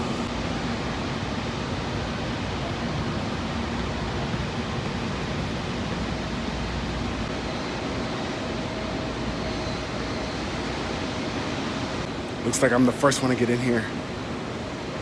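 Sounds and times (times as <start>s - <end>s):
faint steady tone: 0.0s - 0.3s
steady rushing noise: 0.0s - 1.5s.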